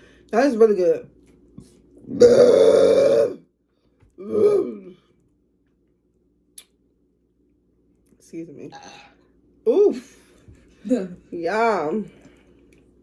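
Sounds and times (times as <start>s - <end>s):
woman burping: 2.1s - 3.4s, 4.2s - 5.0s.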